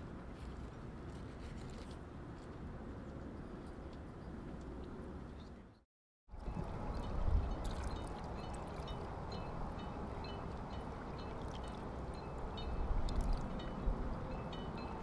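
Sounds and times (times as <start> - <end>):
water lapping: 6.4 - 9.4, 10.0 - 12.2.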